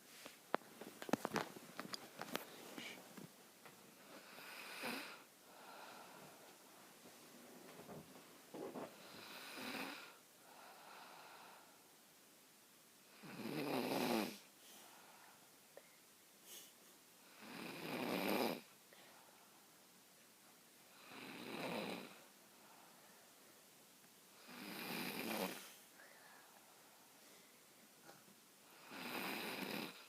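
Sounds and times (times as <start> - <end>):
person snoring: 28.8 - 30.0.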